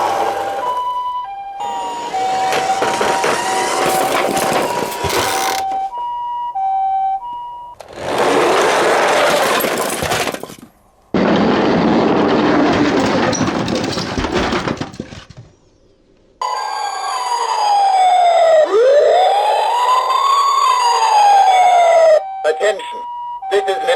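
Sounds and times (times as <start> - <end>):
two-tone ambulance siren: 0.0 - 7.8, 16.4 - 23.9
wailing siren: 0.0 - 7.8, 16.4 - 23.9.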